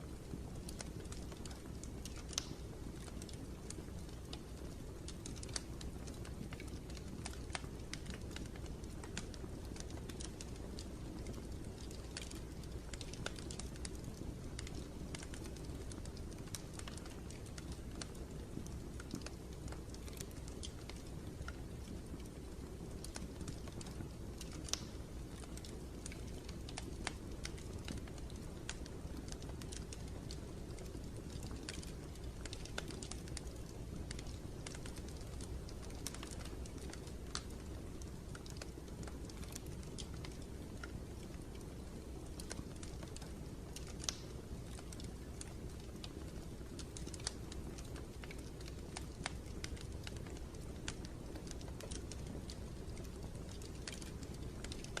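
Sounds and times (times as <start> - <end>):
small clicks and ticks: 0.0 - 55.0.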